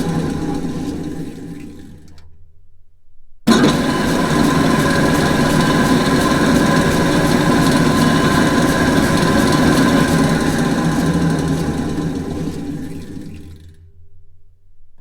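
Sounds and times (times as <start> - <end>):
drill press running: 0.0 - 2.2, 3.5 - 14.0.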